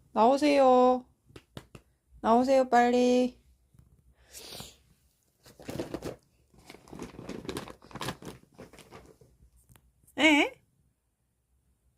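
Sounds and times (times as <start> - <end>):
fabric bag rustling: 5.4 - 9.3.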